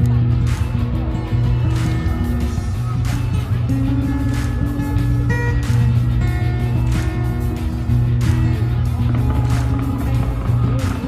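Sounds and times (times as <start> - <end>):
music with heavy bass: 0.0 - 11.0.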